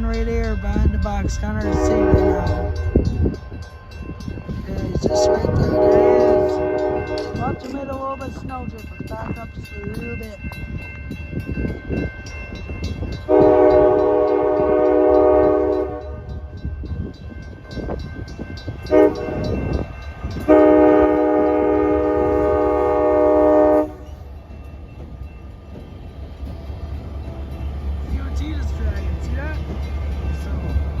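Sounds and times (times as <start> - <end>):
locomotive air horn: 1.6 - 3.0, 5.0 - 7.6, 13.3 - 16.4, 18.9 - 19.6, 20.4 - 24.2
locomotive low rumble: 11.6 - 31.0.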